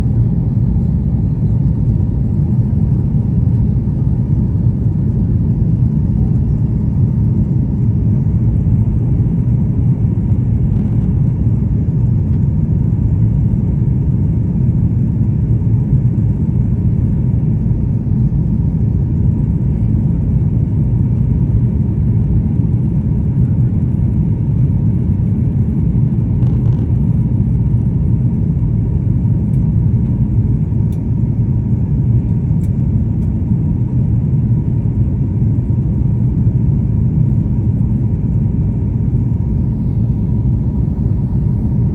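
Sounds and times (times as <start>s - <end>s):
airliner cabin rumble: 0.0s - 41.9s.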